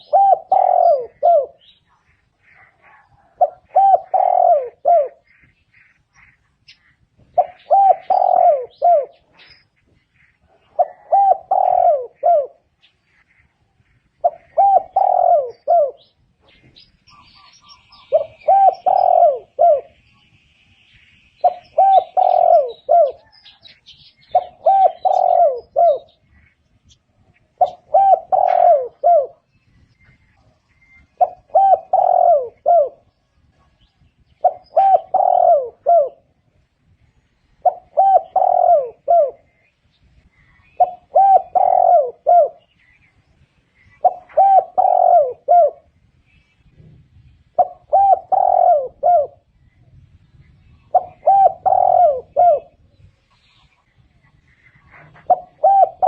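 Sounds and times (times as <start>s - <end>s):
dove cooing: 0.0s - 20.0s, 21.4s - 46.0s, 47.5s - 49.7s, 50.6s - 56.0s.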